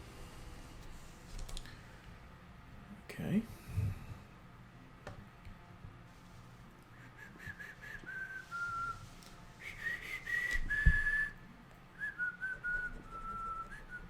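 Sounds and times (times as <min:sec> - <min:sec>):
person whistling a slow tune: 0:07.0 - 0:11.4, 0:12.0 - 0:14.0.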